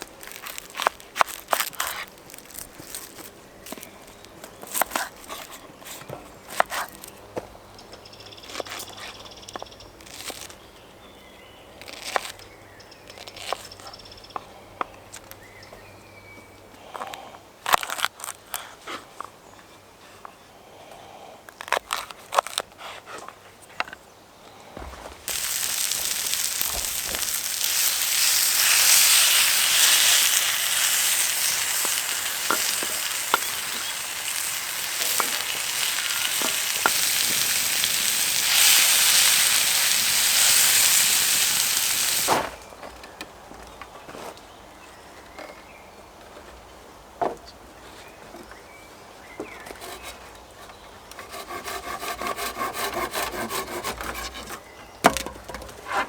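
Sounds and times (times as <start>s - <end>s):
food sizzling in a pan: 25.3s - 42.4s.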